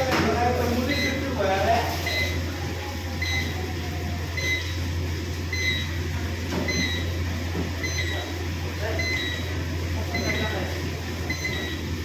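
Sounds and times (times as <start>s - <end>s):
short high electronic beeps: 11.2s - 11.8s.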